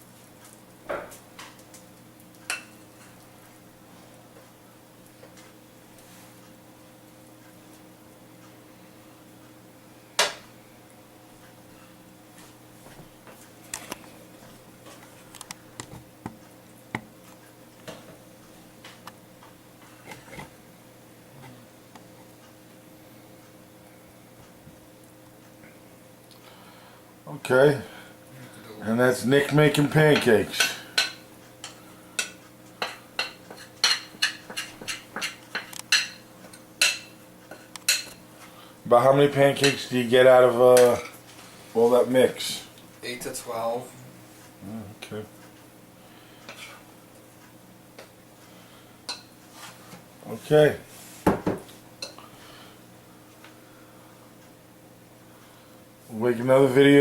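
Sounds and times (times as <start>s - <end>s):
steady low hum: 0.0s - 57.0s
utensils tapping pan and bowl: 30.1s - 38.2s, 39.6s - 39.8s.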